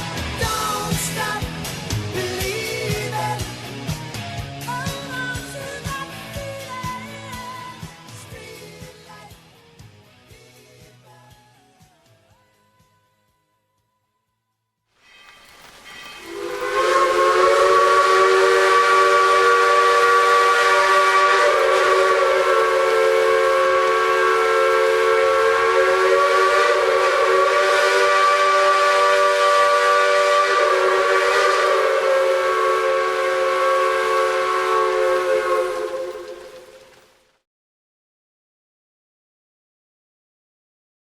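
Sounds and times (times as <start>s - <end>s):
steam hissing: 0.0s - 4.1s, 15.0s - 37.2s
chime steam whistle: 15.0s - 37.1s.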